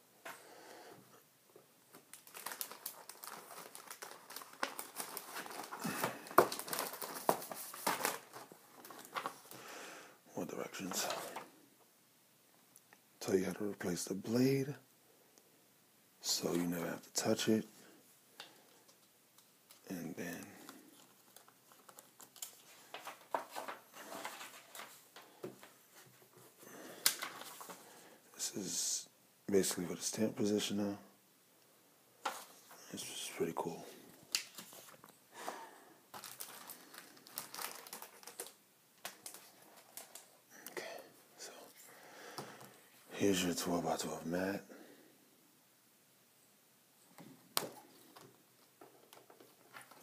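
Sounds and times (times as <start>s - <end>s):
packaging crinkling: 1.9s - 9.6s, 19.7s - 25.7s, 34.3s - 40.4s, 47.6s - 50.0s
paper and plastic sleeves rustling: 1.9s - 9.7s, 10.6s - 11.6s, 18.4s - 28.2s, 32.2s - 40.5s, 47.2s - 50.0s.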